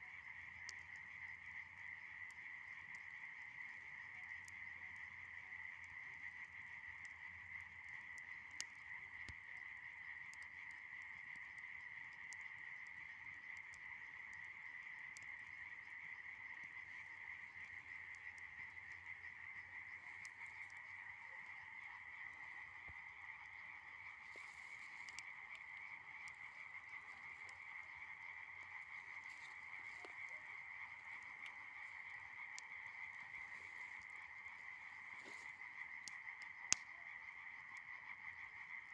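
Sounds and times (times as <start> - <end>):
frogs chorus: 0.0 - 38.9
fire crackling: 15.1 - 36.9.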